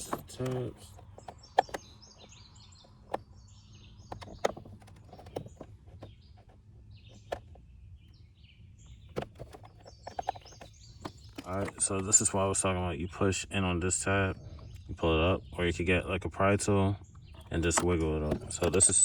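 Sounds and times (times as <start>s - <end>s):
sharp plastic clicks and taps: 0.0s - 2.0s, 17.4s - 19.0s
birds chirping: 0.0s - 19.0s.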